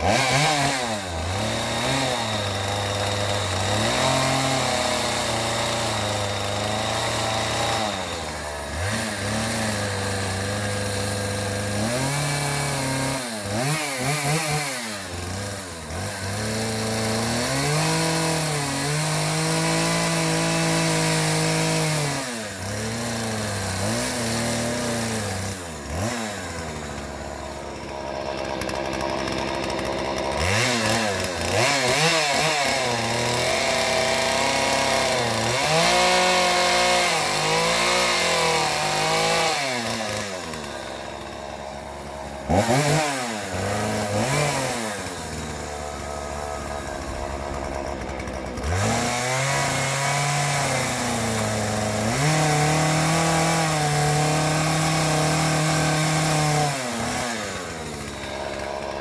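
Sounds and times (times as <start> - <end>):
small engine running hard: 0.0 - 59.0.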